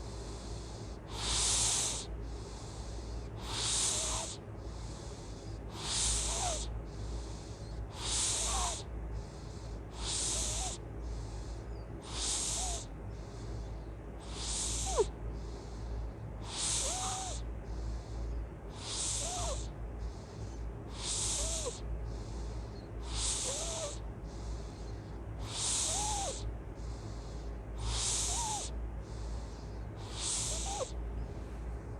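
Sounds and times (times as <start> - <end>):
steady low hum: 0.0 - 31.9
loud whistling snoring: 3.4 - 4.9, 5.8 - 6.7, 12.1 - 12.9, 14.3 - 15.1, 16.5 - 17.4, 18.8 - 19.7, 21.0 - 21.8, 23.0 - 24.0, 25.5 - 26.4, 27.8 - 28.7, 30.0 - 30.9.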